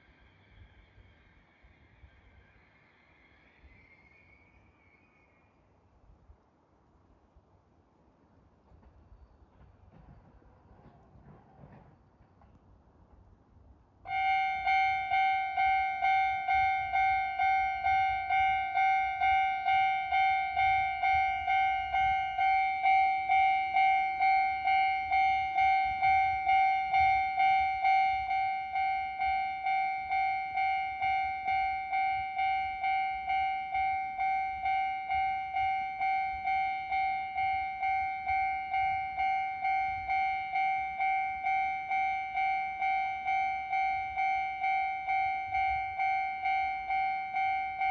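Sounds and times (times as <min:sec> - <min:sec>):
level crossing bell ringing: 0:14.1 - 0:47.9.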